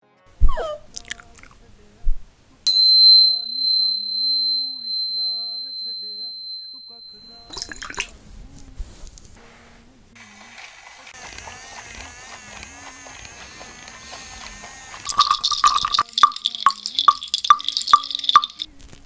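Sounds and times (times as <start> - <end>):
high-pitched bell ding: 2.7 - 7.7.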